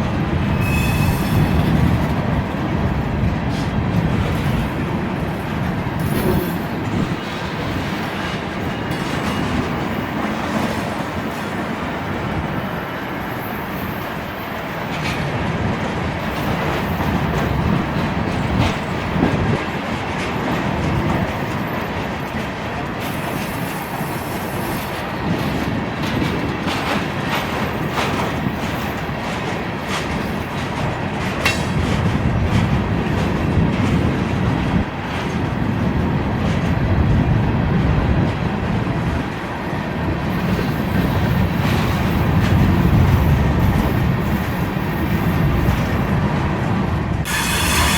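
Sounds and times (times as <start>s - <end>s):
wind buffeting microphone: 0.0s - 13.1s, 14.0s - 47.9s
train wheels clicking over rail joints: 0.2s - 11.8s, 14.8s - 46.4s, 47.2s - 47.9s
faint wheel squeal: 0.5s - 1.6s.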